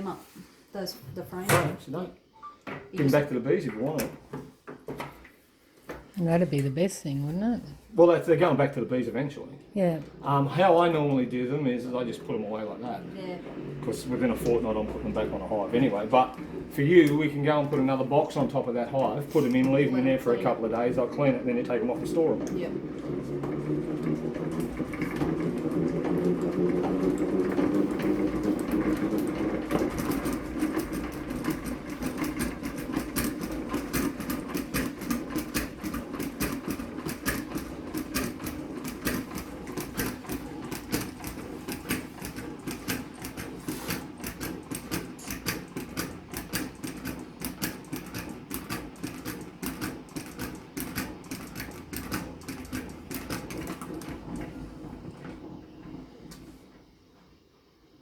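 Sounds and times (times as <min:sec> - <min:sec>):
hand-cranked honey extractor spinning: 0:10.2 - 0:56.1.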